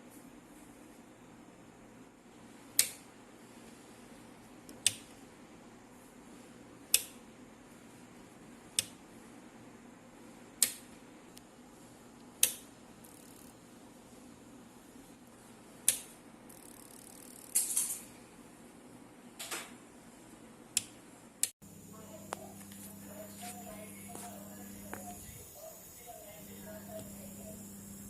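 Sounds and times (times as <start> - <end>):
power supply fan ticking: 2.7 - 3.1, 6.8 - 7.3, 8.7 - 9.1, 10.5 - 11.5, 12.2 - 13.6, 15.8 - 17.6, 20.7 - 28.0
low steady hum: 17.6 - 28.0.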